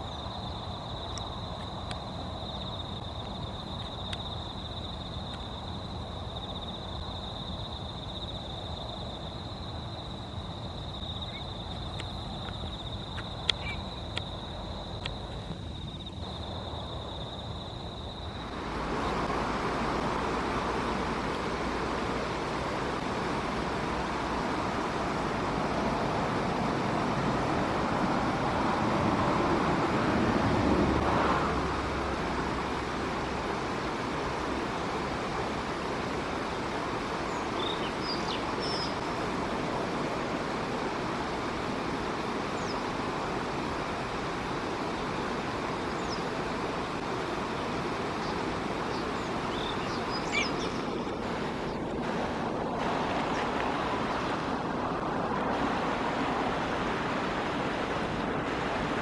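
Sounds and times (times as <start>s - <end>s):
road traffic: 9.7s - 37.8s, 39.0s - 59.0s
faint bird chirps: 12.7s - 14.1s, 48.2s - 51.0s.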